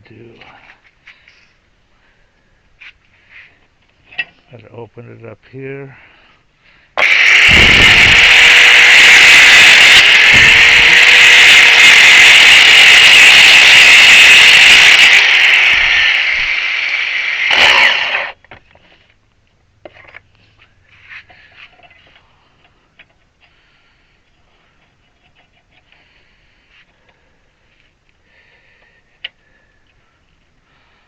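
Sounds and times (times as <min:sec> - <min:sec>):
power grinder cutting: 0:07.0 - 0:18.4.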